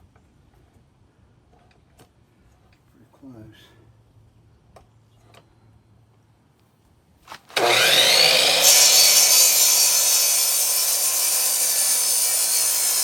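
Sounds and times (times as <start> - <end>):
power saw cutting wood: 7.5 - 13.0.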